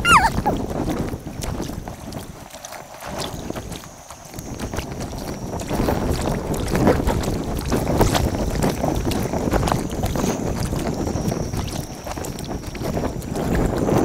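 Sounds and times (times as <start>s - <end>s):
paddle splashes and knocks: 0.0s - 13.7s
wind rumbling on microphone: 0.0s - 14.0s.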